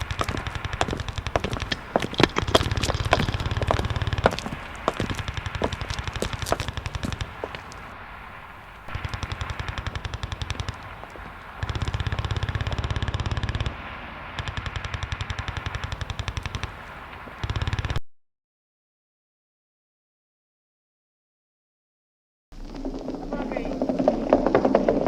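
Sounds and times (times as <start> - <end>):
machine-gun fire: 0.0 - 18.0.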